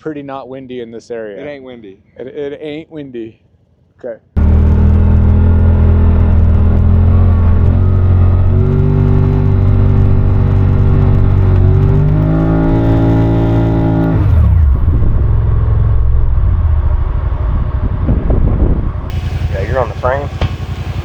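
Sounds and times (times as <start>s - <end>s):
utility vehicle engine revving: 4.4s - 21.0s.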